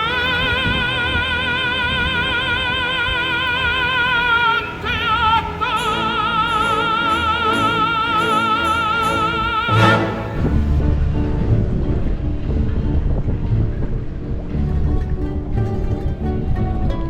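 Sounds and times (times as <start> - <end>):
operatic solo singing: 0.0 - 10.8.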